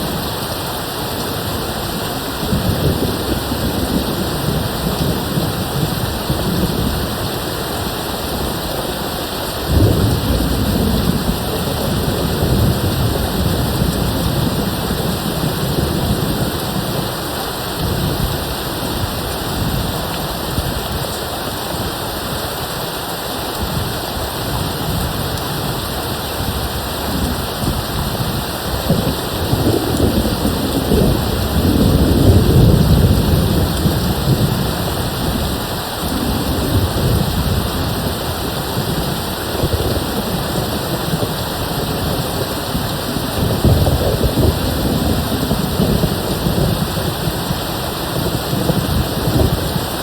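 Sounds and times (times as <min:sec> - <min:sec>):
thunder rumbling: 0:00.0 - 0:21.2, 0:23.6 - 0:50.0
heavy rain hissing: 0:00.0 - 0:50.0.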